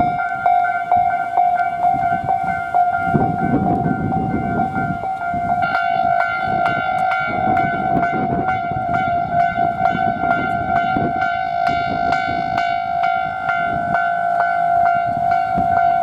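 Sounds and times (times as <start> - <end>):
level crossing warning bells: 0.0 - 16.0
passing train rumble: 0.0 - 16.0.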